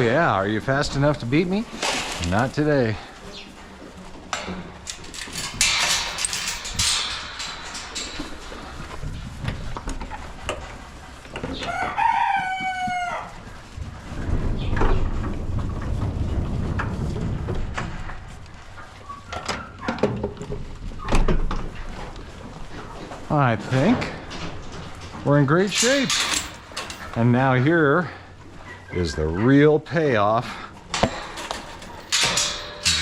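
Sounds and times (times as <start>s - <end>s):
chickens clucking: 0.0s - 4.8s, 27.0s - 32.1s
rustling: 0.0s - 28.9s
rooster crowing: 11.7s - 13.3s.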